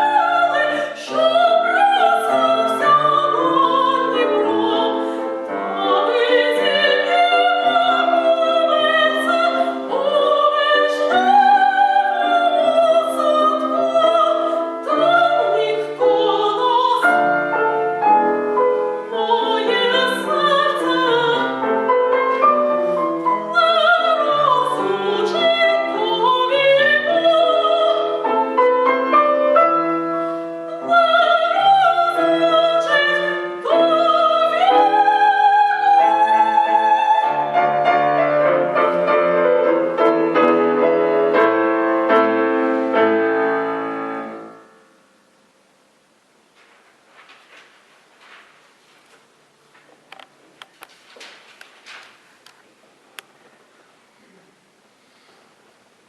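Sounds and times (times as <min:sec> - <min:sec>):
woman singing with vibrato: 0:00.0 - 0:29.2, 0:30.6 - 0:38.6
piano accompaniment: 0:00.0 - 0:45.0.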